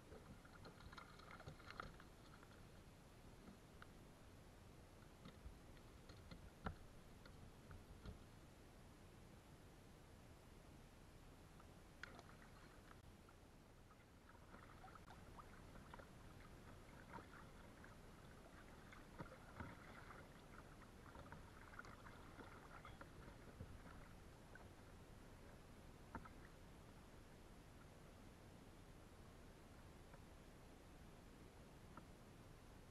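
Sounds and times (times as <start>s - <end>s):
water splashing and dripping: 0.1s - 2.6s, 14.2s - 24.7s.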